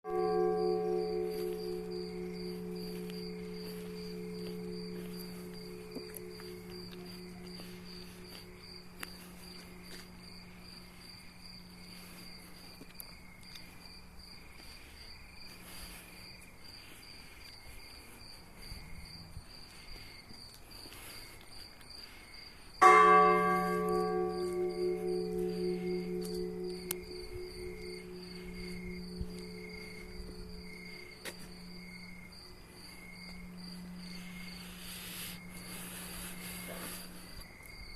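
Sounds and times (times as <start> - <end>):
bell ringing with overtones: 0.0 - 8.4, 22.8 - 31.2
insect chirping: 0.1 - 37.9.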